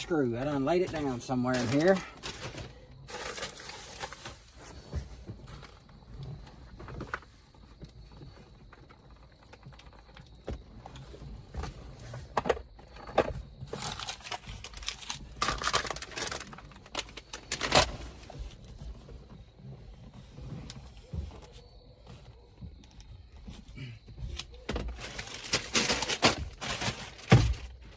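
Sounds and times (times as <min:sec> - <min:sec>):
rustling while rummaging: 0:00.0 - 0:27.9
small objects clattering and clicking: 0:00.7 - 0:04.5, 0:08.7 - 0:18.4, 0:24.7 - 0:27.9.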